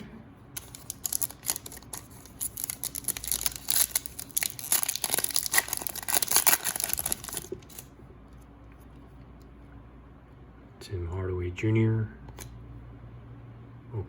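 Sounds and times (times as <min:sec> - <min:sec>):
card pack wrapper tearing: 0:00.6 - 0:07.9.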